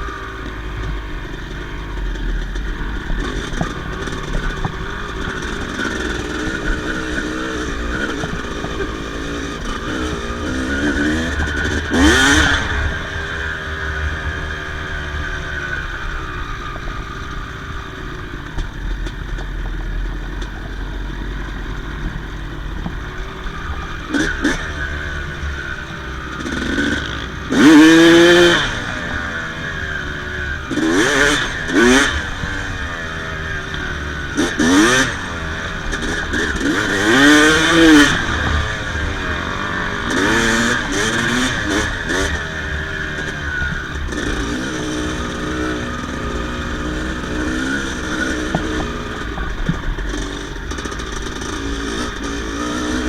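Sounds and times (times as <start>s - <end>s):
dirt bike engine revving: 0.0s - 53.0s.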